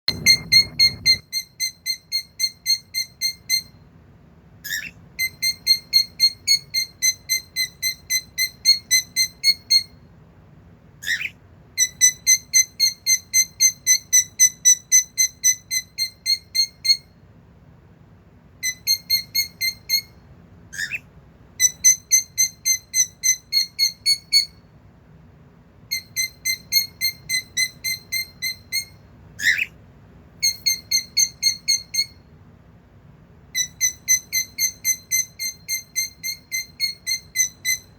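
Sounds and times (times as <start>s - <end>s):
bird shrill calls: 0.1s - 3.7s, 4.6s - 9.9s, 11.0s - 17.1s, 18.6s - 24.6s, 25.9s - 29.8s, 30.4s - 32.2s, 33.6s - 37.9s.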